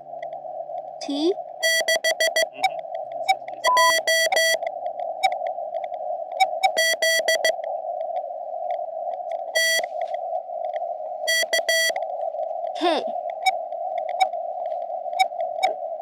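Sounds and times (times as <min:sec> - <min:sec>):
radio band noise hiss: 0:01.0 - 0:05.3
morse code beeps: 0:01.6 - 0:04.6, 0:06.4 - 0:07.6, 0:09.6 - 0:09.9, 0:11.3 - 0:12.0.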